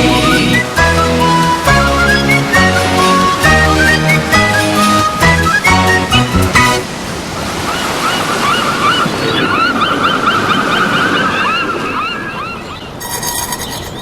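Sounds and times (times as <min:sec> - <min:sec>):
theme music: 0:00.0 - 0:06.8
ocean surf washing: 0:04.7 - 0:13.0
birds chirping: 0:07.8 - 0:14.0.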